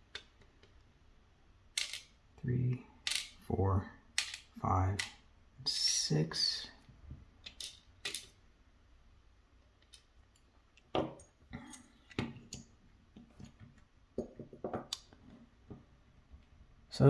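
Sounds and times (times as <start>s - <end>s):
metal lock parts clicking: 1.8s - 2.1s, 3.0s - 3.4s, 4.2s - 5.1s, 7.4s - 8.4s.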